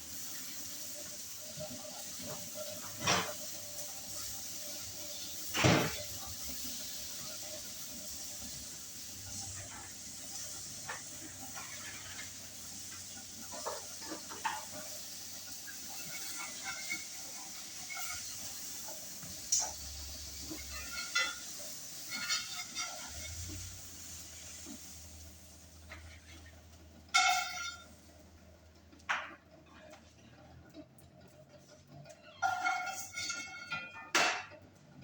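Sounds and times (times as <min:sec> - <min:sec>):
eggs sizzling in a pan: 0:00.0 - 0:35.0
kitchenware clicks and knocks: 0:02.8 - 0:03.4, 0:05.5 - 0:06.1, 0:32.4 - 0:34.6.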